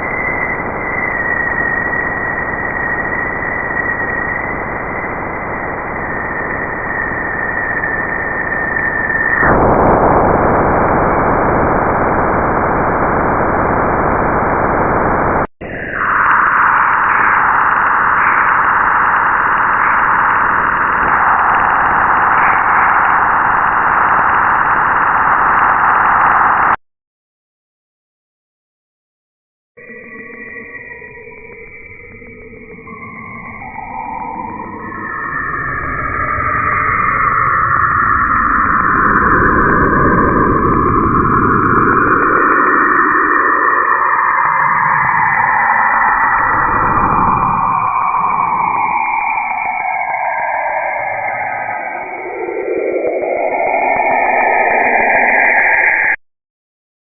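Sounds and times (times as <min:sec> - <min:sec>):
thin steady whistle: 0:00.0 - 0:11.0, 0:15.6 - 0:26.7, 0:29.8 - 0:56.2
static-like hiss: 0:09.4 - 0:26.8.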